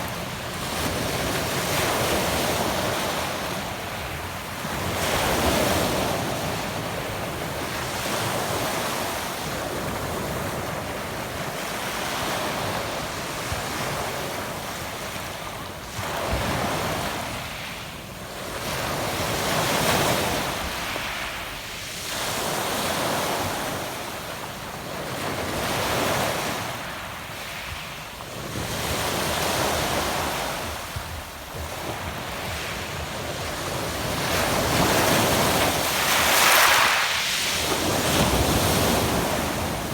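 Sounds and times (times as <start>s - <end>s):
waves washing onto pebble beach: 25.3s - 39.9s.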